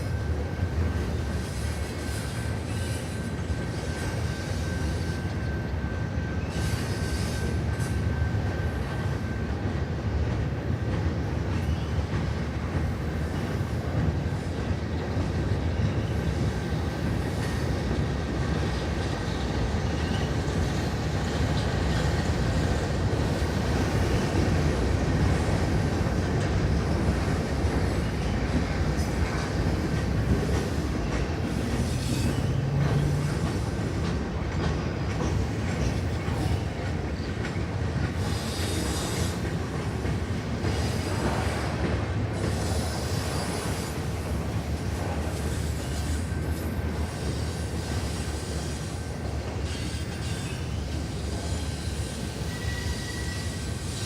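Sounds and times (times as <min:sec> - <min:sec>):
train wheels rumbling on rails: 0:00.0 - 0:54.0
faint thin squeal: 0:01.5 - 0:08.4, 0:31.6 - 0:33.3, 0:49.6 - 0:54.0.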